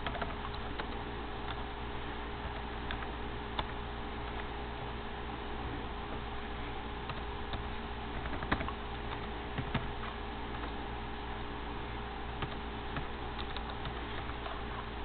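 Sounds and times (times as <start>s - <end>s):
laptop keyboard typing: 0.0s - 1.7s, 2.5s - 4.5s, 7.0s - 10.8s, 12.4s - 14.8s
steady background hum: 0.0s - 15.0s.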